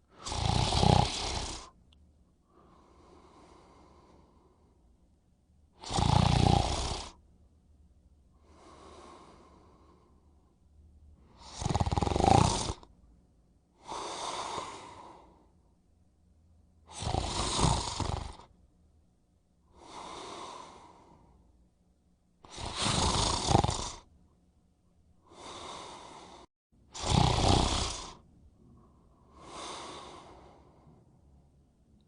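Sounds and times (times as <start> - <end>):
person snoring: 0.1 - 1.8, 5.8 - 7.2, 8.4 - 10.1, 11.2 - 12.9, 13.8 - 15.5, 16.9 - 18.5, 19.7 - 21.4, 22.5 - 24.1, 25.3 - 28.2, 29.2 - 31.0
quiet breath: 2.4 - 5.0, 8.3 - 10.6, 13.7 - 15.8, 19.6 - 21.6, 25.2 - 26.5, 27.8 - 32.0.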